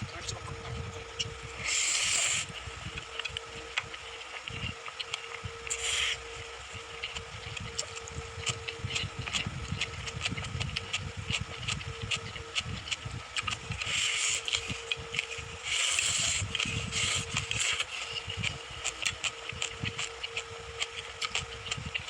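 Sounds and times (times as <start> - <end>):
faint steady hum: 0.0 - 22.0
chewing mouth clicks: 0.2 - 22.0.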